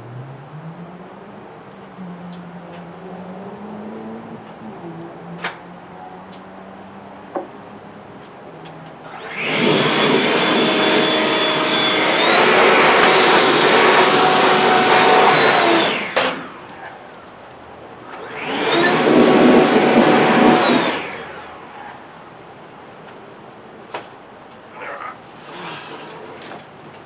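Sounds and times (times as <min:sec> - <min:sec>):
motor-driven machine whining: 0:09.1 - 0:16.5, 0:18.1 - 0:21.5.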